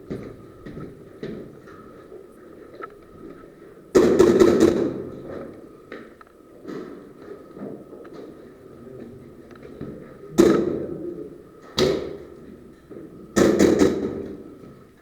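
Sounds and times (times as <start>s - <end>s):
airsoft gun shots: 4.0s - 5.0s, 13.4s - 14.3s.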